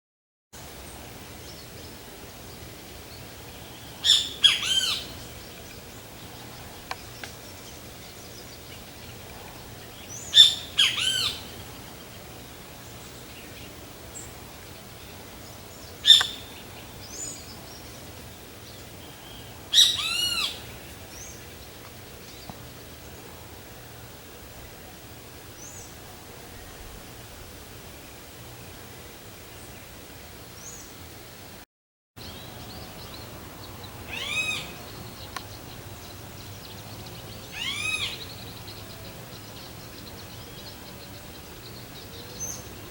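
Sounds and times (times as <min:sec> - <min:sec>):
bird calling loudly: 0:03.7 - 0:07.2, 0:08.6 - 0:11.6, 0:16.0 - 0:17.4, 0:19.0 - 0:21.3, 0:34.0 - 0:38.7.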